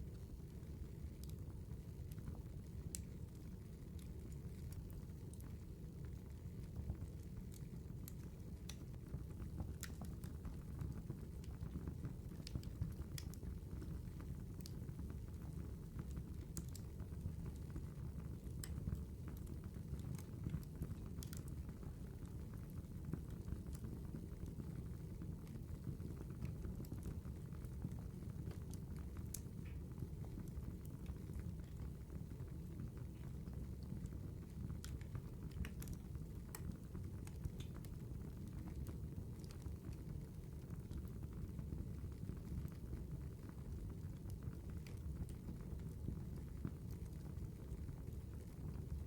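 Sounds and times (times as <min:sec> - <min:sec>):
campfire rumble: 0:00.0 - 0:49.0
fire crackling and popping: 0:00.0 - 0:49.0.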